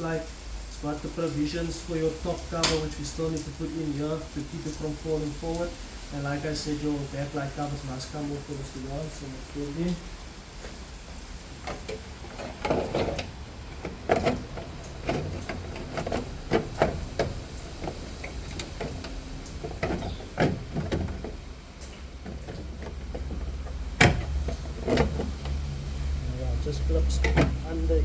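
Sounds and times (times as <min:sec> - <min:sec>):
carpet rustling and knocking: 0:22.2 - 0:25.4.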